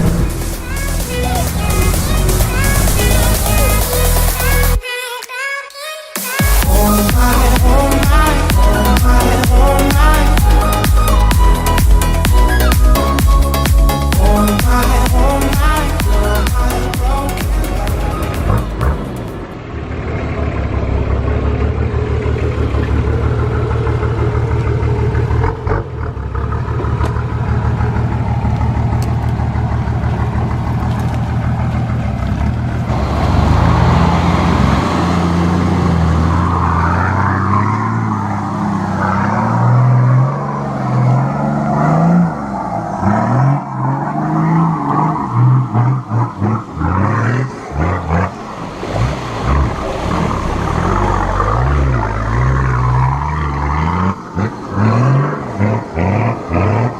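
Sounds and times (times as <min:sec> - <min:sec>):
vehicle engine revving: 0:00.0 - 0:04.8, 0:06.6 - 0:56.9.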